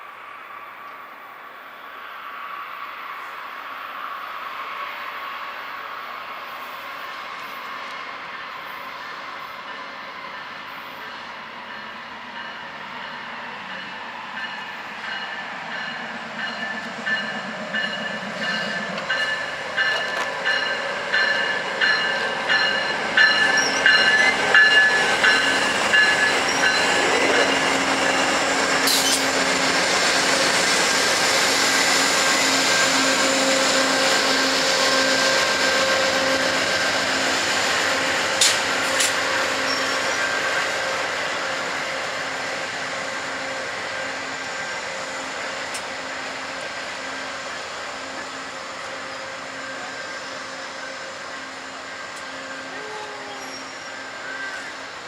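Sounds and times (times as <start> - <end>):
rush of passing train cars: 0.0 - 55.0
train wheels clattering: 11.7 - 40.8.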